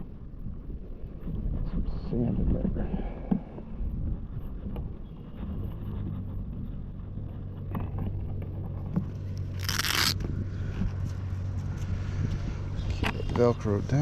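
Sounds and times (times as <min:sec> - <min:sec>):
wind rumbling on microphone: 0:00.0 - 0:14.0
velcro strap ripping open: 0:09.5 - 0:10.2.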